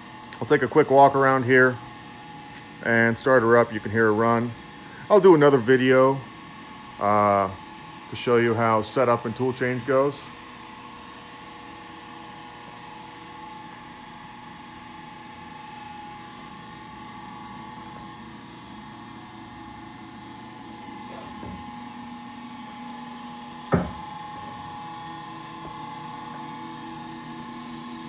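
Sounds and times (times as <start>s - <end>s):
spindle shaper humming and whining: 0.0s - 28.0s
sharp knock: 23.7s - 24.0s.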